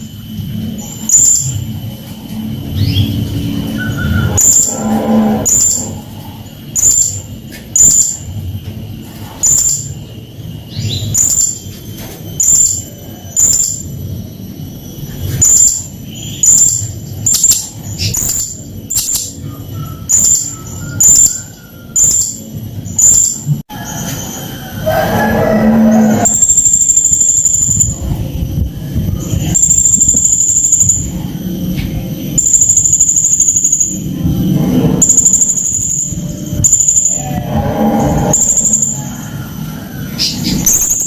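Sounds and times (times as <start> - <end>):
parrot chirping: 32.3 - 34.1.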